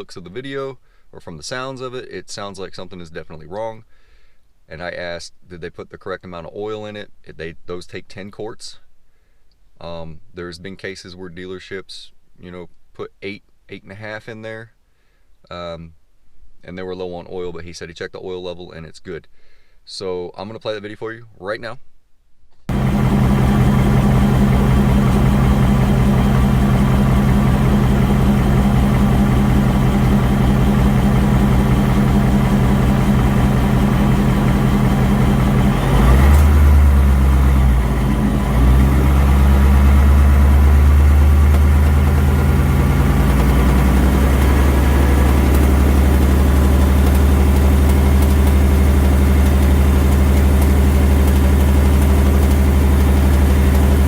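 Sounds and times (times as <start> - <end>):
car engine ticking and tapping: 22.7 - 54.0.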